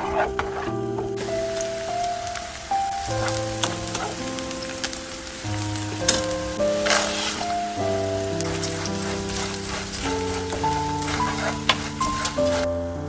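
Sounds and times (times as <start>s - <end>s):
background music: 0.0s - 13.0s
food sizzling in oil: 1.1s - 12.8s
stirring clicks: 3.0s - 12.7s.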